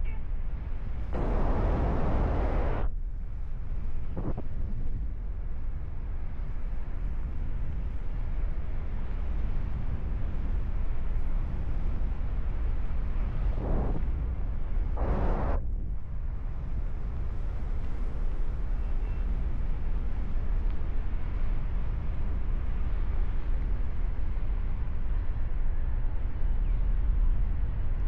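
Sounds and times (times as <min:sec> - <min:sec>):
wind buffeting microphone: 0:00.4 - 0:28.0
short bursts of noise: 0:15.0 - 0:15.6.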